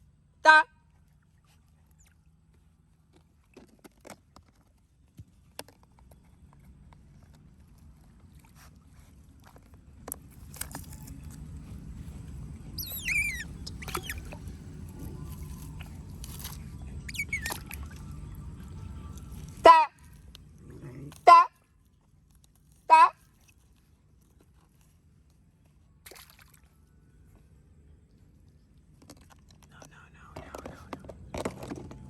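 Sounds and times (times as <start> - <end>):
water sloshing and splashing: 7.0 - 20.6, 21.9 - 27.5, 28.1 - 32.0
high squeaks falling in pitch: 12.8 - 14.3.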